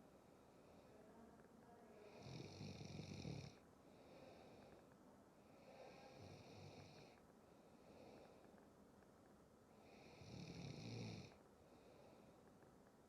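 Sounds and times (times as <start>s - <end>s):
soft breaths: 0.0s - 13.0s
person snoring: 9.9s - 11.4s.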